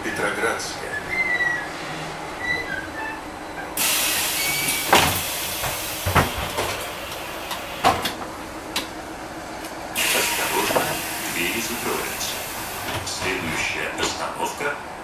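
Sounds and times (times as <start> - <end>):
compressed air hissing: 3.8 - 6.2, 10.0 - 13.0
knocks and thumps in cabin: 4.9 - 6.8.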